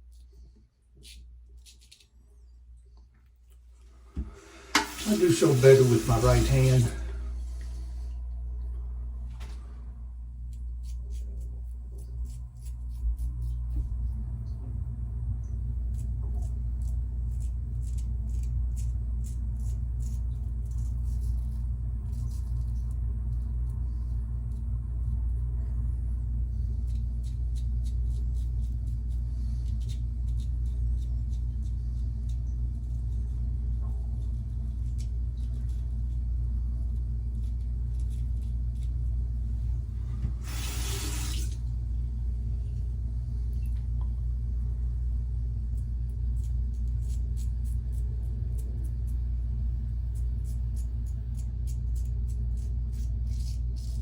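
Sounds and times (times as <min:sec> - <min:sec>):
razor scraping stubble: 0:04.7 - 0:07.6, 0:10.4 - 0:13.9, 0:15.9 - 0:23.4, 0:40.4 - 0:41.6, 0:45.7 - 0:54.0
low rumble: 0:06.9 - 0:18.2, 0:41.5 - 0:50.4.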